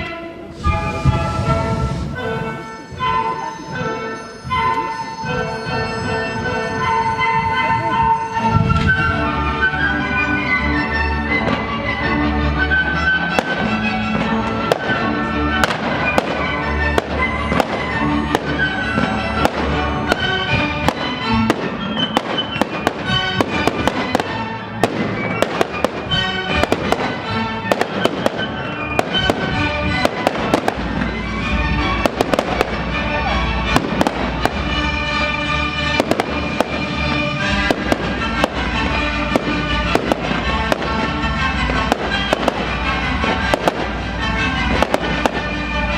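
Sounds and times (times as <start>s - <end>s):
music playing: 0.0s - 45.9s
fireworks bangs and crackles: 0.5s - 3.3s, 4.4s - 45.9s.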